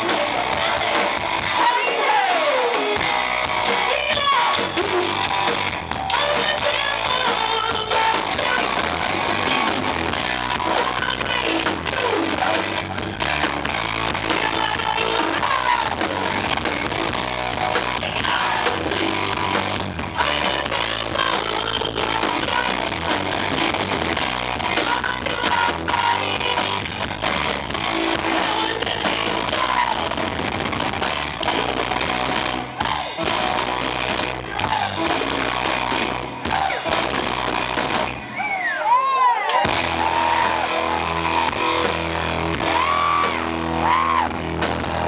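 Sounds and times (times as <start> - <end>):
person singing: 0.0 - 2.9, 5.9 - 13.0, 14.1 - 16.6, 17.6 - 23.8, 24.6 - 27.0, 27.8 - 30.2, 38.9 - 45.0
distorted live rock band: 0.0 - 45.0.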